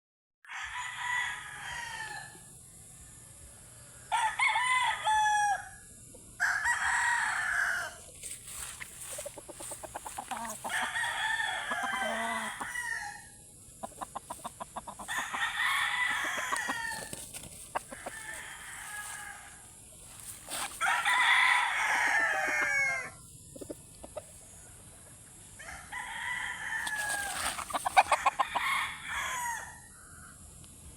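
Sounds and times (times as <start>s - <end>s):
roosters crowing: 0.5s - 2.5s, 3.5s - 23.2s, 25.5s - 30.5s
quick clucking: 13.8s - 15.1s.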